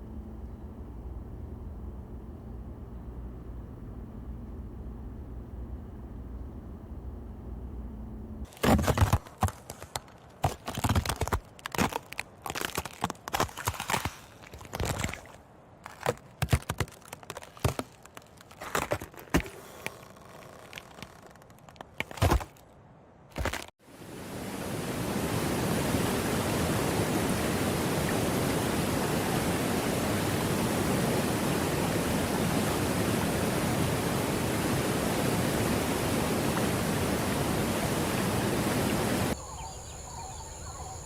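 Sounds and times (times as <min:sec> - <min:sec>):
ice cracking and crunching: 0:08.5 - 0:22.6
rushing waterfall: 0:23.8 - 0:39.4.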